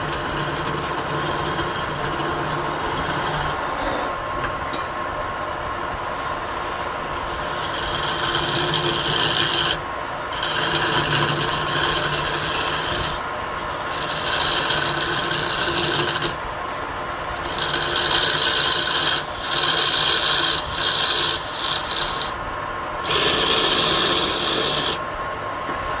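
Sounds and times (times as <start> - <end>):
wood lathe motor whine: 0.0 - 4.1, 6.8 - 16.4, 17.4 - 22.4, 23.0 - 25.0
tool scraping spinning wood: 0.0 - 4.2, 6.2 - 16.4, 17.3 - 22.4, 23.0 - 25.0.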